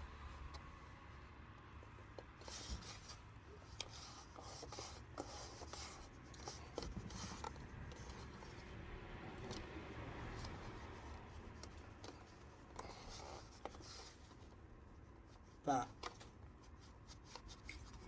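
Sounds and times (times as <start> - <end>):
plastic parts rubbing and scraping: 2.1 - 8.8, 9.4 - 18.0.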